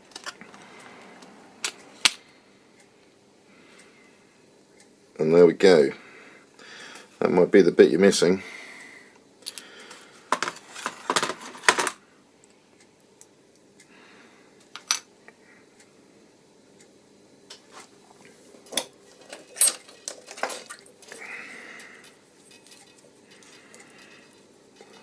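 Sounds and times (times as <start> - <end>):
plastic parts clicking and clattering: 0.0 - 0.5, 9.4 - 12.0, 18.7 - 21.2.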